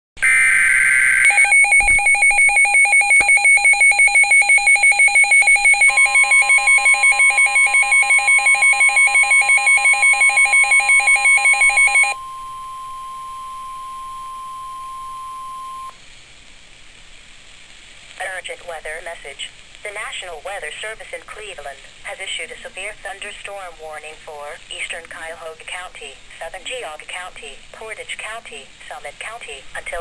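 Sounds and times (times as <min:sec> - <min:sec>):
rapid electronic alert beeps: 0:00.2 - 0:12.2
warbling data burst: 0:00.2 - 0:12.2
steady attention tone: 0:00.2 - 0:16.0.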